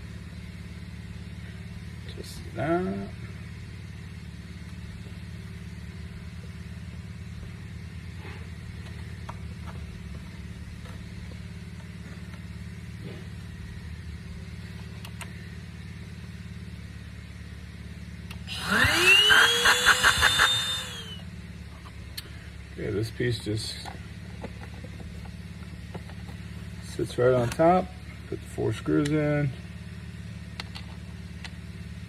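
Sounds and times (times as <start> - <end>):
low hum: 3.2 - 22.4
cordless drill whining: 18.3 - 21.2.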